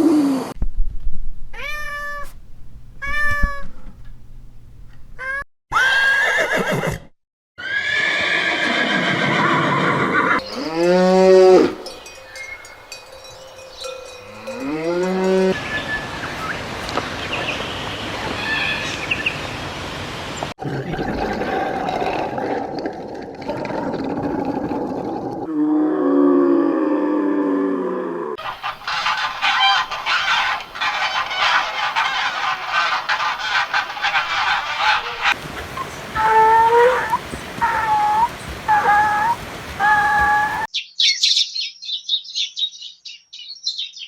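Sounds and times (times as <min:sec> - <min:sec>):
farm animal calls: 0:01.6 - 0:02.4, 0:03.0 - 0:03.8, 0:28.4 - 0:40.7.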